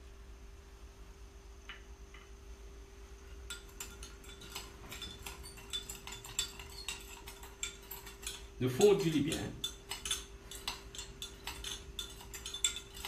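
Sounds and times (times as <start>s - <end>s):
metal spoon clinking against dish: 3.3s - 13.0s.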